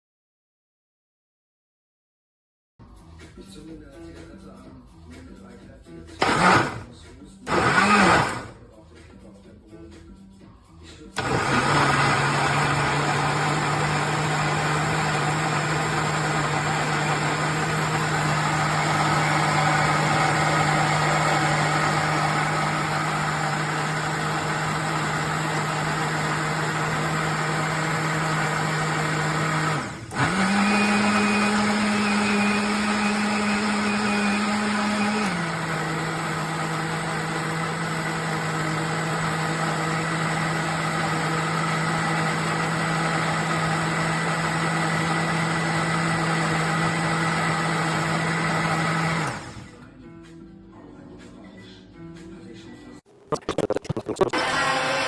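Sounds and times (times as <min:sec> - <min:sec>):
blender motor humming: 0:06.2 - 0:06.9, 0:07.5 - 0:08.6, 0:11.2 - 0:49.8, 0:53.3 - 0:55.0.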